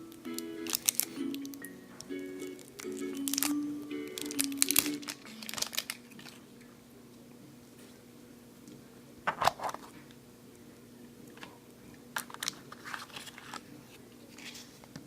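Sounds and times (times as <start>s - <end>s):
faint background music: 0.0s - 6.3s
packaging crinkling: 0.3s - 1.6s, 2.4s - 6.5s, 12.2s - 13.7s.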